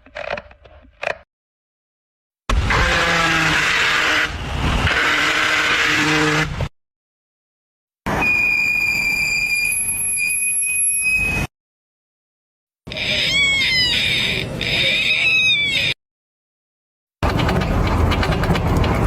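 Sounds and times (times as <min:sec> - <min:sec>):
high-pitched squeal: 0:08.1 - 0:11.5
loud rough car noise: 0:17.2 - 0:19.0.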